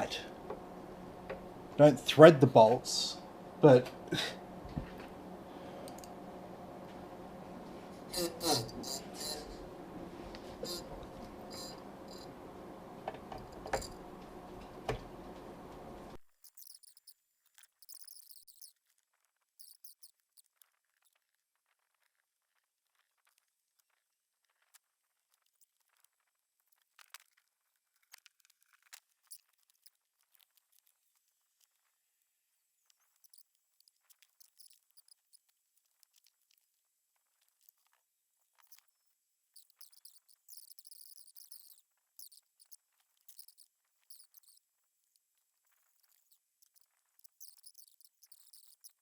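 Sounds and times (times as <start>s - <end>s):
steady low hum: 0.0s - 16.2s
faint clicks: 5.8s - 6.2s
faint high chirps: 39.6s - 44.6s, 46.1s - 49.0s.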